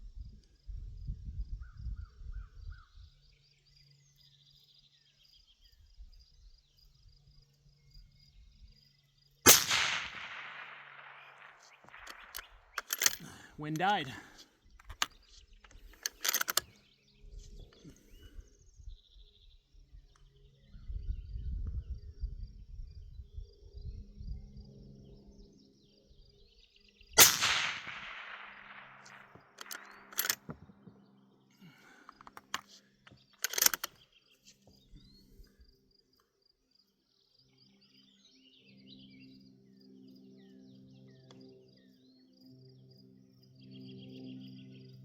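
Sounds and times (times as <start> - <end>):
wind rumble on microphone: 0.0 - 3.2, 17.3 - 25.4
faint birdsong: 0.0 - 45.0
rifle shot: 9.5 - 14.3, 27.2 - 30.5
short sharp cracks: 9.5 - 15.1, 27.2 - 30.6.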